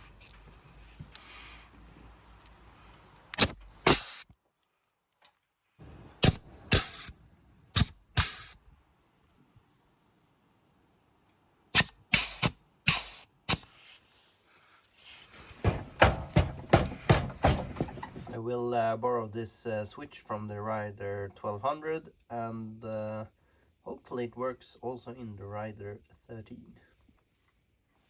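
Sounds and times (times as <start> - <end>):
sharp knocks and clacks on mower: 15.4 - 18.4.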